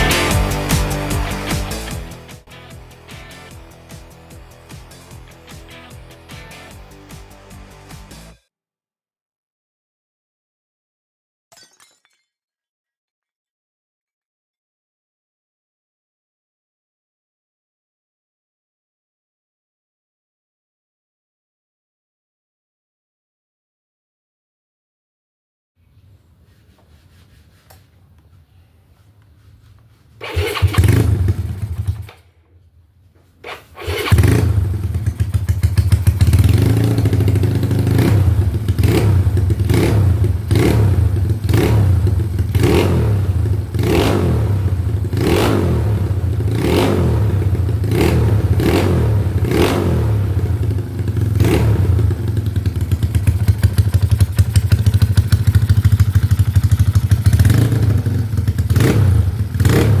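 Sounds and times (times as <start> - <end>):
scooter engine starting and revving: 0.0 - 2.5, 30.2 - 32.3, 33.4 - 60.0.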